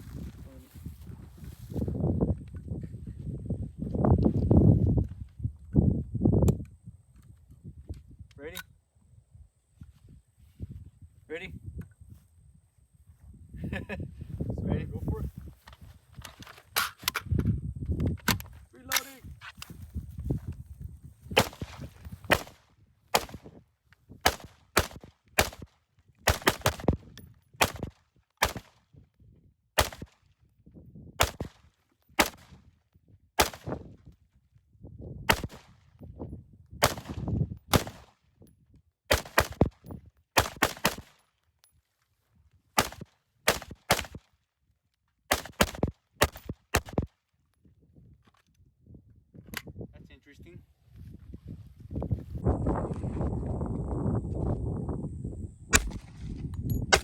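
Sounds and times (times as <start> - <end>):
gunshots: 21.4 - 23.4, 24.2 - 25.7, 26.3 - 27.0, 27.6 - 28.8, 29.8 - 30.2, 31.2 - 31.6, 32.2 - 32.5, 33.4 - 33.8, 35.3 - 35.7, 36.8 - 38.1, 39.1 - 39.8, 40.4 - 41.2, 42.8 - 44.2, 45.3 - 47.1, 55.7 - 57.0.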